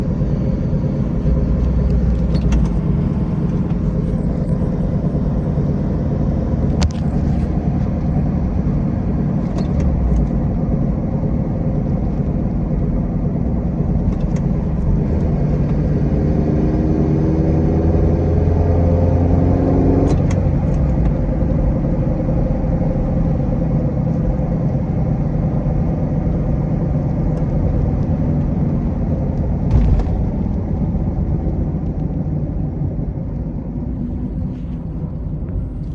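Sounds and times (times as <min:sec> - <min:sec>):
rising whine: 0:00.0 - 0:10.7
car engine low rumbling drone: 0:00.0 - 0:35.9.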